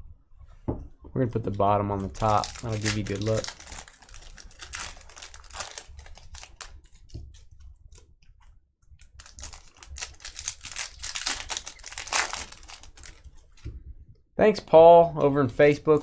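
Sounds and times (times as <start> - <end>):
packaging crinkling and rustling: 1.4 - 8.1, 9.0 - 13.6.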